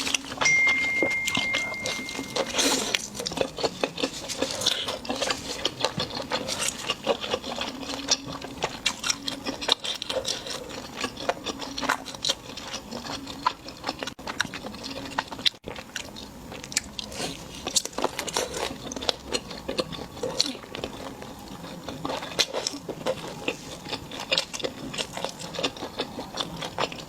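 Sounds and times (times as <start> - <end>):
crunchy chewing: 0.0 - 27.0.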